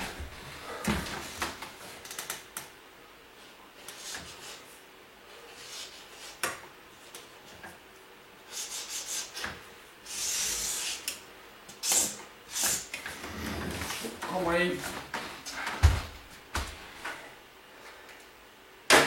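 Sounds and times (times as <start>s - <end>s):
boxes rubbing and scraping: 12.5s - 14.2s.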